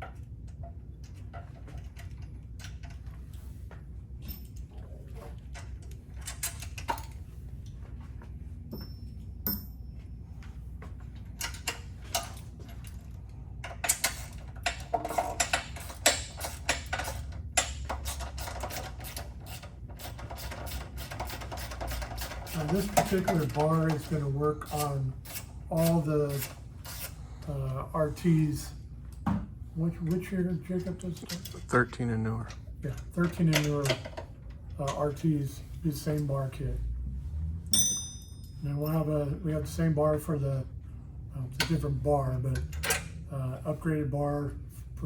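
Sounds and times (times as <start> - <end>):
steady low hum: 0.0 - 45.0
ratchet wrench clicking: 13.8 - 25.5.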